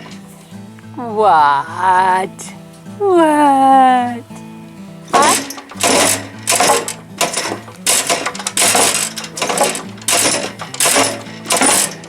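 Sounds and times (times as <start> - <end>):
horse banging: 5.1 - 12.0.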